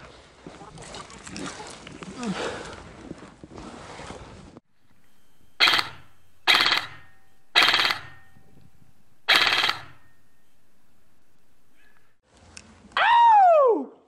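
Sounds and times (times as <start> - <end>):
airsoft rifle full-auto bursts: 4.8 - 12.0.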